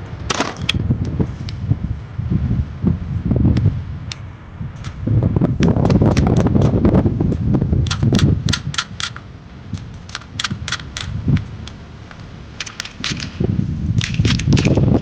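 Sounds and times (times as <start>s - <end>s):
low rumbling: 0.0s - 15.0s
sharp clicks and clatter: 5.6s - 6.8s, 7.8s - 15.0s.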